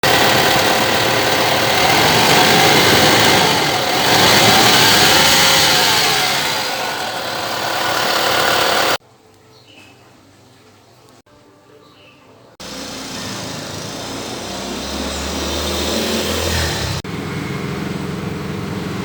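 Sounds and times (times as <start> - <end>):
engine revving: 0.0 - 9.0, 12.6 - 19.0
rough harsh alternator noise: 0.0 - 9.0, 12.6 - 19.0.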